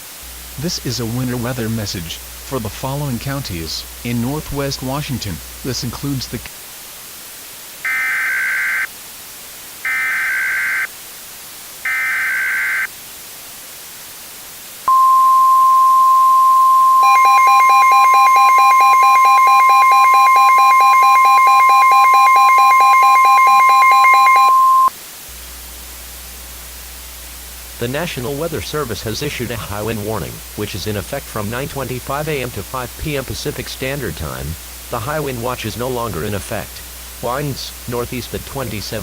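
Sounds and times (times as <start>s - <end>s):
steady warning alarm tone: 14.9s - 24.9s
warbling data bursts: 14.9s - 24.9s.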